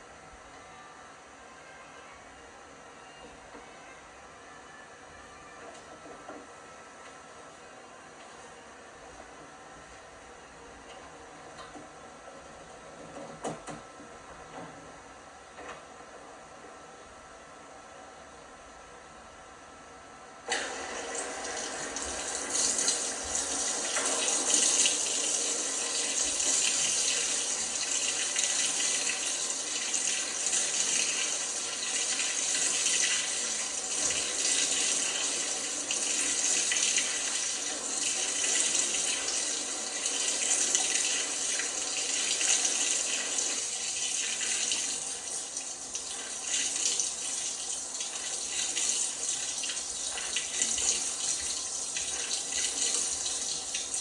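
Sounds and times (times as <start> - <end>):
water rushing into washing machine: 20.5 - 54.0.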